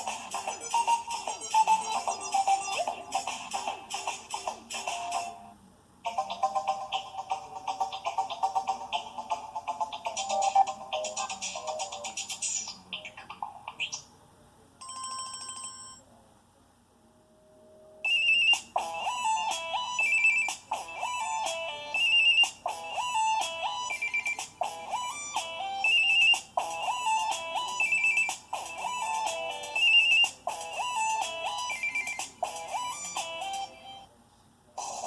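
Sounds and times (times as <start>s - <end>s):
phone ringtone melody: 0.0s - 3.9s, 6.1s - 12.1s, 14.8s - 16.0s, 18.0s - 34.1s.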